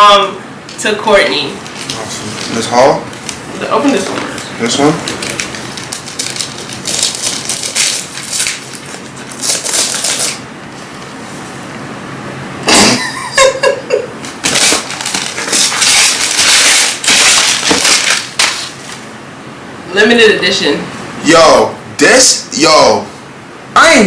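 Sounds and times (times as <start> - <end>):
wrapping paper tearing and crumpling: 4.0 - 10.4, 14.4 - 19.0.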